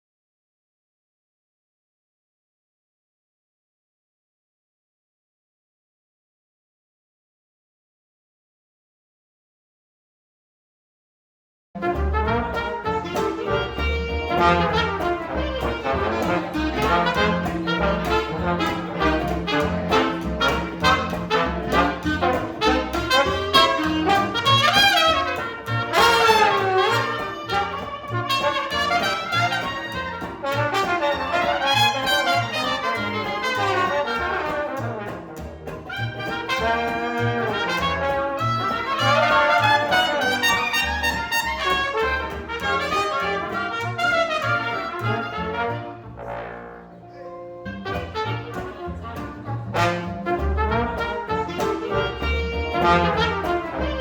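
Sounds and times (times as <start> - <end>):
jazz band playing: 11.8 - 54.0
trumpet sliding phrases: 11.8 - 54.0.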